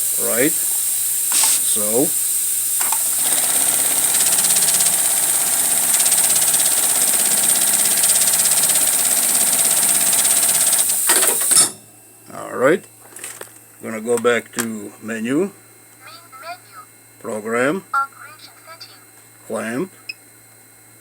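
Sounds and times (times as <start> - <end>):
steady hiss: 0.0 - 5.2
sewing machine running: 2.8 - 11.6
machine clicks: 2.8 - 11.7.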